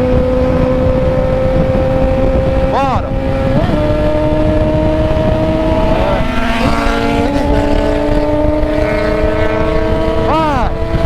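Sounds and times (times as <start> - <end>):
motorcycle engine running: 0.0 - 11.0
wind rumble on microphone: 0.0 - 11.0.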